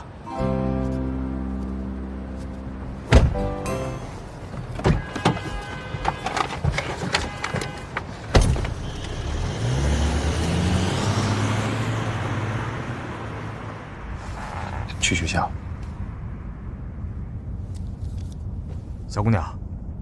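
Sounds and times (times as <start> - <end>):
car door shutting: 3.0 - 8.9
car engine pulling away: 8.5 - 18.9.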